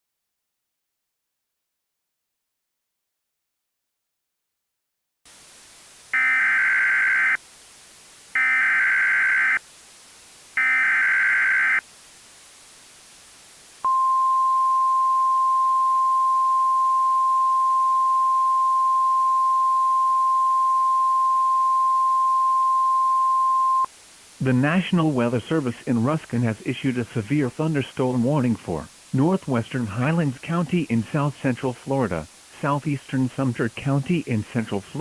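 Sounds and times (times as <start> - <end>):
faint hiss: 5.3 - 10.6, 11.6 - 20.9, 23.8 - 35.0.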